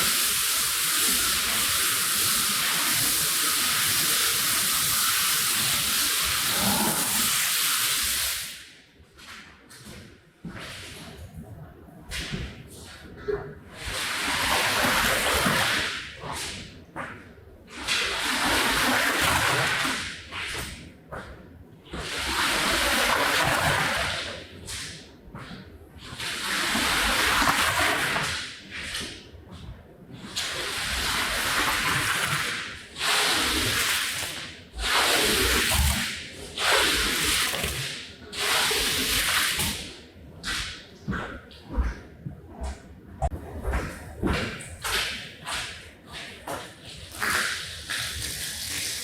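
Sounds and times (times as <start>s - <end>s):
water swishing across wet rug: 21.9s - 42.0s, 42.6s - 49.0s.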